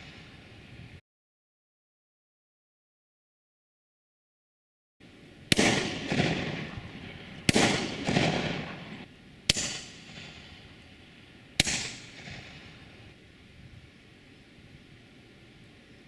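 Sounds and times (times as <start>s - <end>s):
distant shotgun shots: 5.5s - 10.8s, 11.6s - 13.1s
rolling echo: 5.5s - 13.2s.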